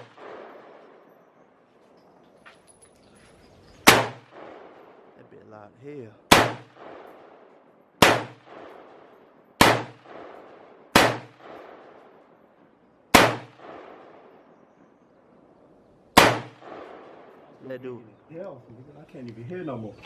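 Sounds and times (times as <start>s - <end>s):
rifle shots with echo: 0.0s - 1.4s, 3.8s - 5.4s, 6.2s - 14.8s, 16.1s - 17.7s.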